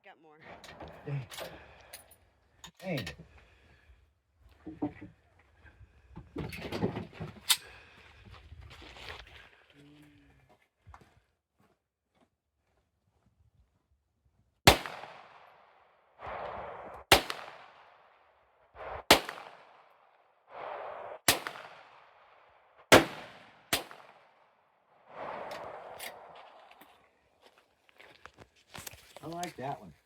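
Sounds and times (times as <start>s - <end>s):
gunshots ringing out: 14.7s - 15.6s, 16.3s - 18.1s, 18.9s - 20.0s, 21.2s - 24.4s.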